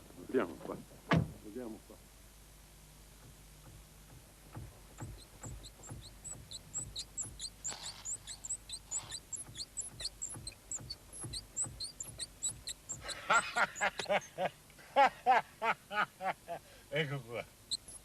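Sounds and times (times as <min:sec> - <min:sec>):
faint clicks and tapping: 0:03.2 - 0:14.1
rapid high-pitched squeaking: 0:05.0 - 0:14.1, 0:17.7 - 0:18.0.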